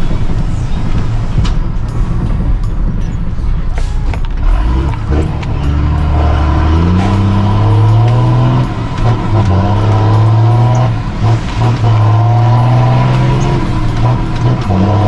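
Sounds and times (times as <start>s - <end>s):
diesel truck engine accelerating: 0.0s - 15.0s.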